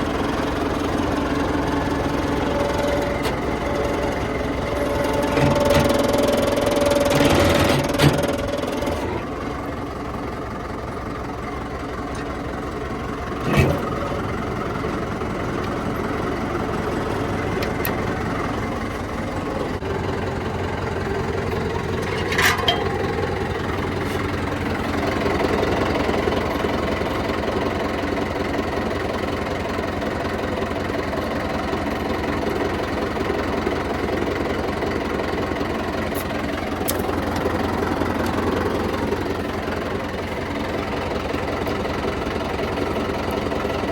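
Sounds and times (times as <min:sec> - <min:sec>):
diesel engine running: 0:00.0 - 0:43.9.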